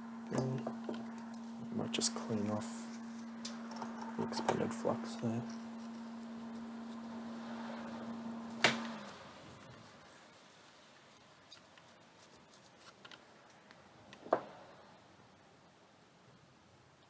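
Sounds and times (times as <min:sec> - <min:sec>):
steady hum: 0:00.0 - 0:12.2
faint ticks and scratches: 0:00.0 - 0:14.2.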